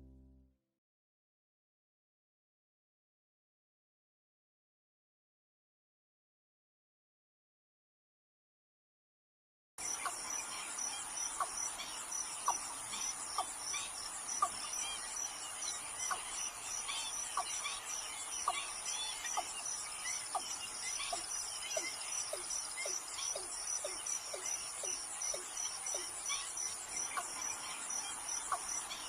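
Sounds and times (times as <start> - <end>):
small birds chirping: 9.8 - 29.0.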